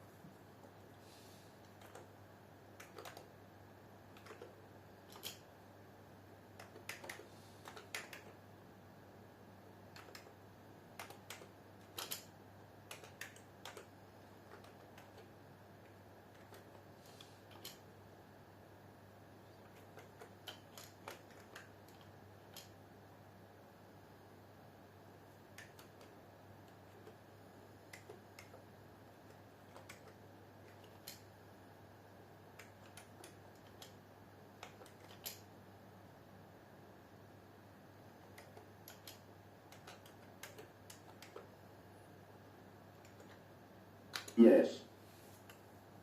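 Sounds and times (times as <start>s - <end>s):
faint low hum: 0.0s - 46.0s
computer keyboard typing: 1.6s - 3.3s, 4.1s - 5.5s, 6.5s - 8.4s, 9.9s - 17.8s, 19.6s - 22.7s, 25.5s - 27.2s, 27.8s - 28.6s, 29.3s - 31.3s, 32.5s - 34.0s, 34.6s - 35.4s, 38.2s - 41.5s, 43.0s - 43.4s.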